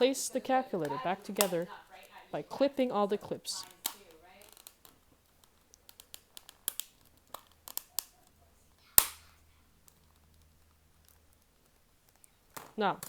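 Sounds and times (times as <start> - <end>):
plastic case clips snapping: 0.8 - 1.7, 3.6 - 8.3, 9.0 - 12.7.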